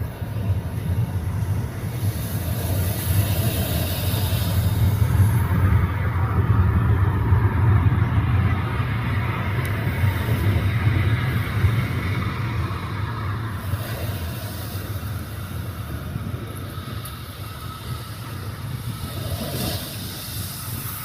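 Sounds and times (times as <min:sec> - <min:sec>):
jet airliner engines rumbling: 0:00.0 - 0:21.0.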